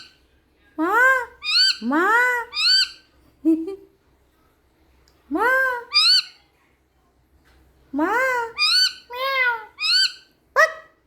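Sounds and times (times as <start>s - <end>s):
parrot calling: 1.0s - 3.1s, 5.6s - 6.4s, 8.2s - 11.0s.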